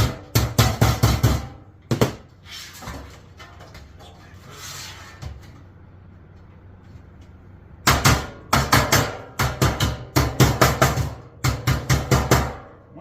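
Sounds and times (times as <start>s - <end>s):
hammer striking sheet metal: 0.0s - 2.3s, 7.8s - 12.8s.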